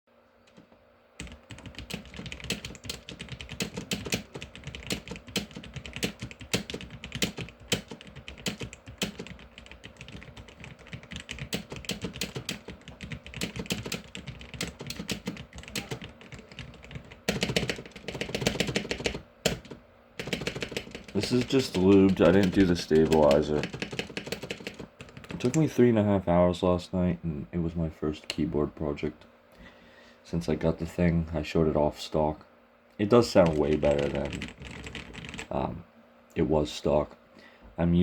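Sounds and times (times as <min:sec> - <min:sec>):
mechanical keyboard keystroke clacks: 0:01.2 - 0:25.6, 0:33.4 - 0:35.5.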